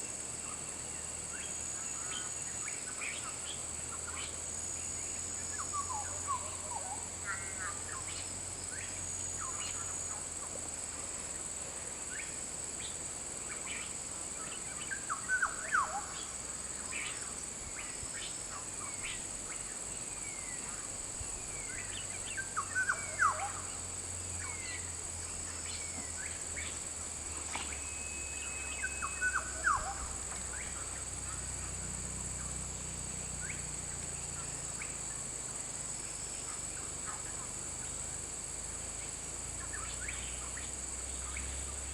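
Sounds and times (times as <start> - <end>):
steady high-pitched hiss: 0.0 - 41.9
birds chirping and whistling: 27.3 - 30.8.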